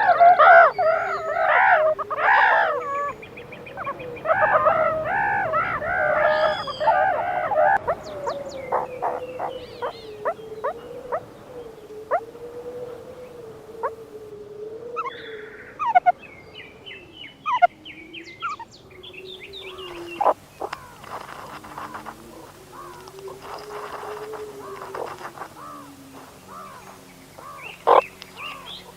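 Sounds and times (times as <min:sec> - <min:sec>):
meerkats chirping: 0:03.8 - 0:11.4, 0:19.9 - 0:22.1, 0:27.4 - 0:28.7.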